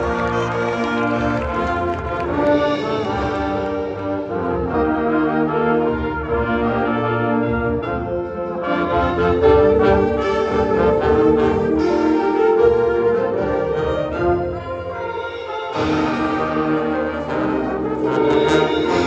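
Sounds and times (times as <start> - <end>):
brass ensemble sustained chords: 0.0 - 19.0.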